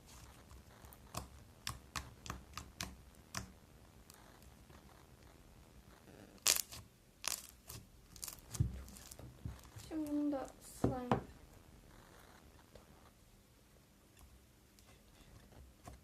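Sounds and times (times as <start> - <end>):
slime sticky clicks and pops: 6.4 - 9.2.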